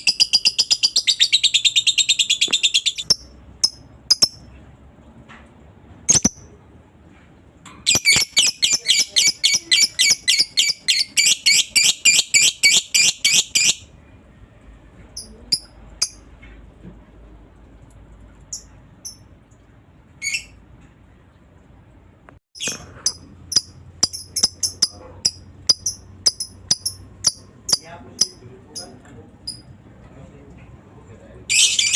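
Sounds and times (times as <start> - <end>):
lovebird chirping: 0.0 - 4.5, 6.1 - 6.5, 7.9 - 13.9, 22.6 - 29.7, 31.5 - 31.9.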